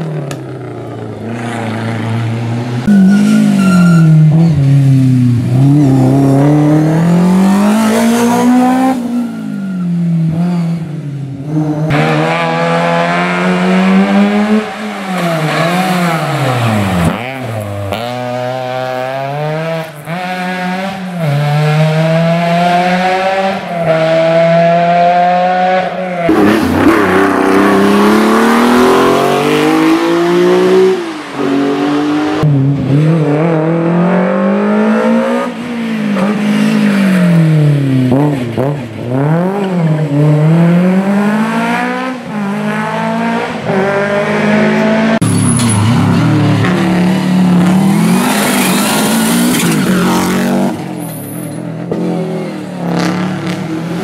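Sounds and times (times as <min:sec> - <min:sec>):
rally car engines revving: 0:00.0 - 0:54.0.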